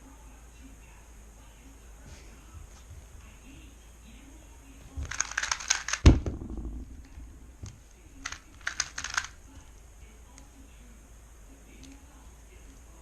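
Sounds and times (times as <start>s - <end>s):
speedcube turning clicks: 5.1s - 9.4s
heavy thump: 6.0s - 7.7s.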